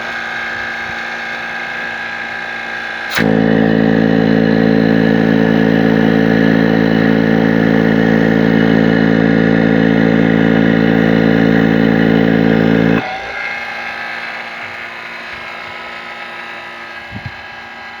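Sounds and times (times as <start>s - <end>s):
pump running down: 3.1s - 13.0s
vacuum pump humming: 3.1s - 13.0s.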